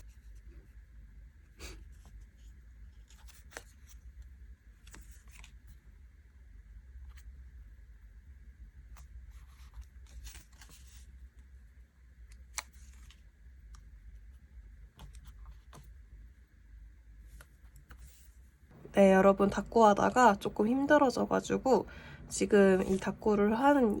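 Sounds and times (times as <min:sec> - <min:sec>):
paper rustle: 0:01.9 - 0:05.8, 0:09.0 - 0:11.2, 0:12.4 - 0:13.3, 0:22.7 - 0:24.0
soft clicks of paper stickers: 0:01.9 - 0:05.9, 0:08.8 - 0:11.5, 0:12.2 - 0:16.0, 0:17.2 - 0:18.9, 0:22.8 - 0:24.0.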